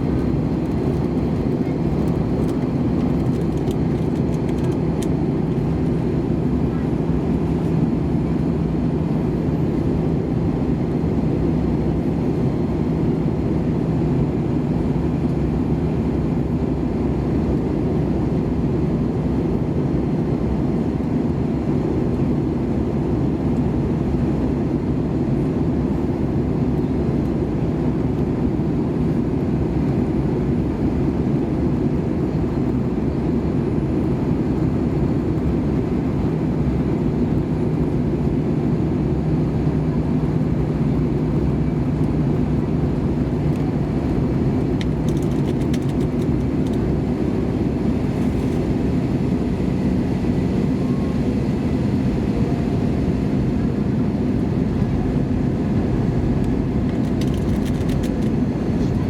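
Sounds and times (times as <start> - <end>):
airplane cabin noise: 0.0 - 59.0.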